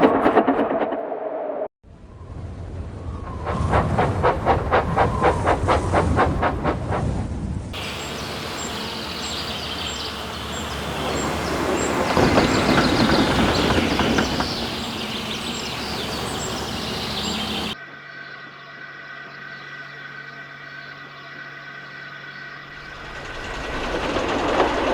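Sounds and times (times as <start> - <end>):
steady engine hum: 1.9 - 17.8
train rumbling and rattling on rails: 2.0 - 17.8, 22.8 - 24.9.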